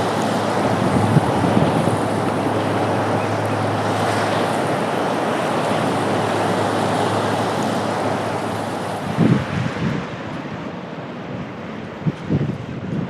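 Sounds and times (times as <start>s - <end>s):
wind thumping on microphone: 0.0s - 4.7s, 8.9s - 10.6s, 11.9s - 13.0s
ocean surf washing: 0.0s - 13.0s.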